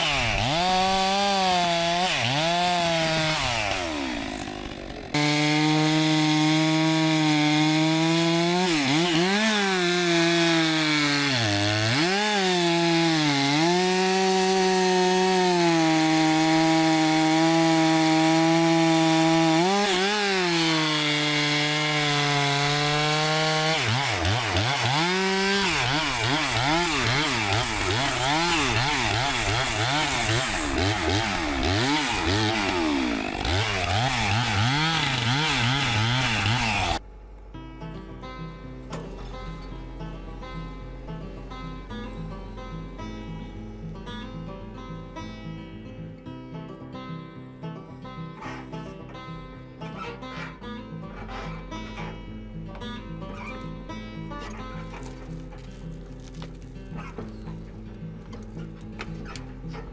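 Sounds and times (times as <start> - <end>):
chainsaw cutting log: 0.0 - 37.0, 54.3 - 59.9.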